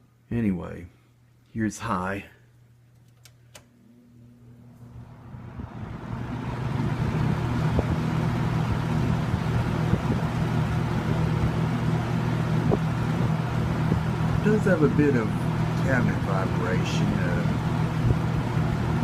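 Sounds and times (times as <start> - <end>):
box fan running: 2.8 - 19.0
fan cabinet vibration: 2.8 - 19.0
fan switch click: 3.0 - 3.7.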